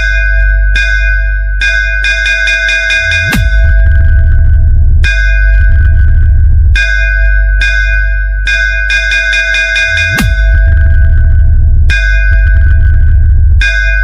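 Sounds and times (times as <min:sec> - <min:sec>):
bell-like synth chimes: 0:00.0 - 0:04.4, 0:05.0 - 0:14.0
heavy sub-bass: 0:00.0 - 0:14.0
falling bass sweep: 0:03.3 - 0:07.4, 0:10.2 - 0:13.7.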